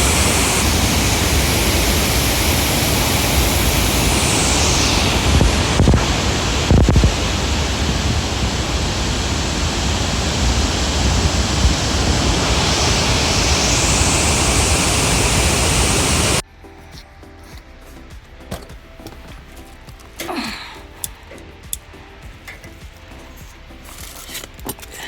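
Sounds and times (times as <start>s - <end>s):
waterfall rushing: 0.0s - 16.4s
wind bumps on microphone: 0.0s - 16.4s.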